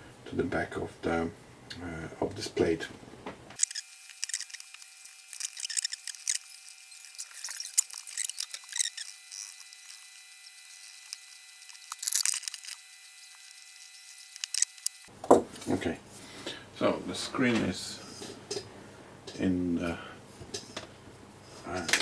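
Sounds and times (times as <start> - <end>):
small parts clicking and tapping: 3.6 - 15.1.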